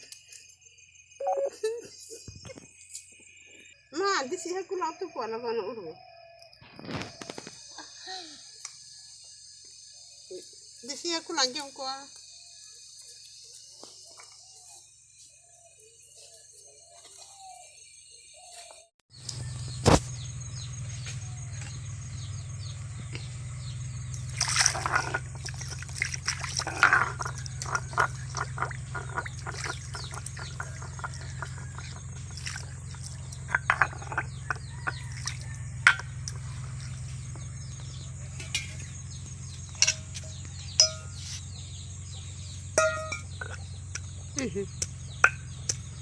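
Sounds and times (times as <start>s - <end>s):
steady low hum: 19.2s - 46.0s
water splashing: 24.2s - 37.0s.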